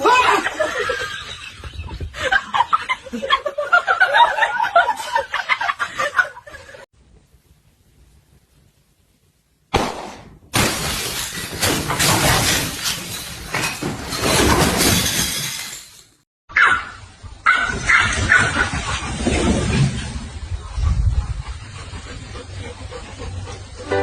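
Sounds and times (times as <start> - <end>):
people laughing: 0.0 - 6.8
things crashing and smashing: 10.5 - 16.2.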